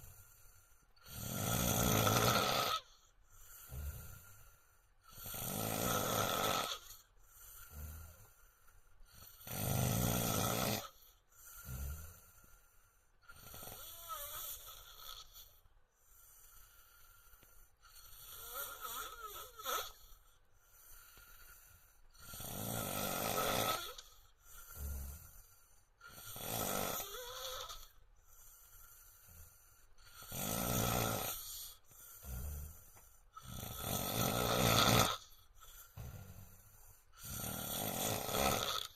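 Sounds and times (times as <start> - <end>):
man snoring loudly: 1.0 - 8.4, 9.1 - 12.4, 13.3 - 15.6, 16.2 - 20.2, 20.8 - 38.9.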